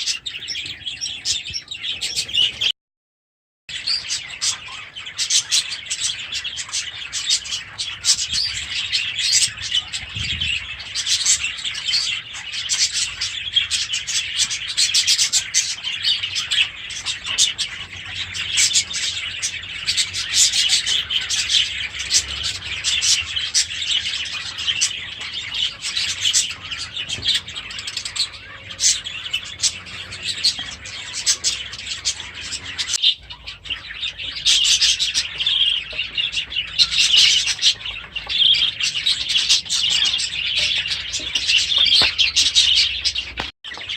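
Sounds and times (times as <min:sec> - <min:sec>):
budgerigars chattering and warbling: 0:00.0 - 0:02.7, 0:03.7 - 0:43.9.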